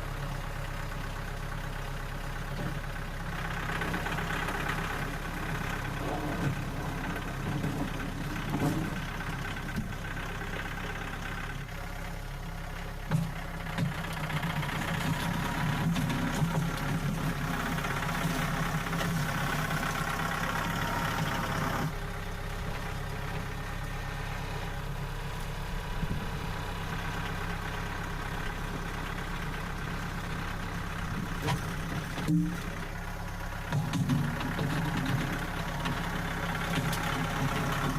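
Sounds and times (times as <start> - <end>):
engine running: 0.0 - 37.9.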